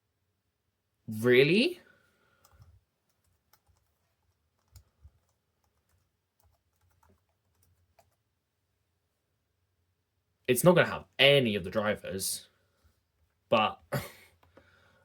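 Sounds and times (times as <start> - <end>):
faint irregular clicks: 2.4 - 8.2, 14.3 - 14.7.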